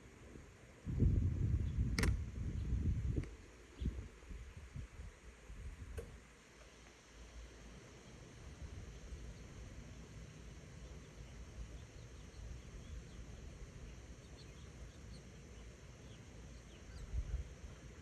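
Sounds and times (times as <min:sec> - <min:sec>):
steady low rumble: 0:00.8 - 0:06.2, 0:08.2 - 0:18.0
faint bird chirps: 0:10.8 - 0:18.0.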